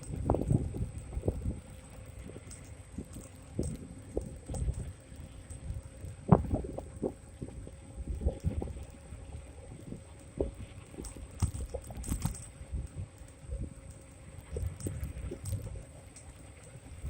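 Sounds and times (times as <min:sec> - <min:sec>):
wind rumbling on microphone: 0:00.0 - 0:17.0.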